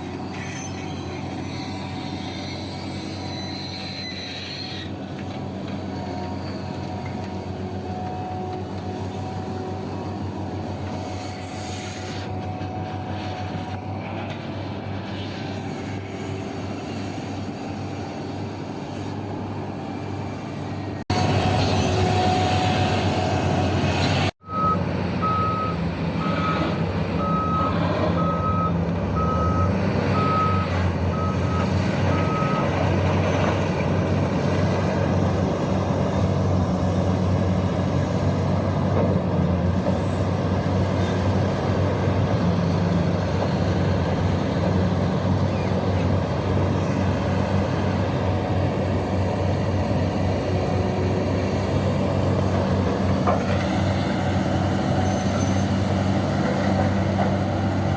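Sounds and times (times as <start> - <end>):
heavy diesel machinery running: 0.0 - 57.9
backup alarm beeps: 24.4 - 26.6.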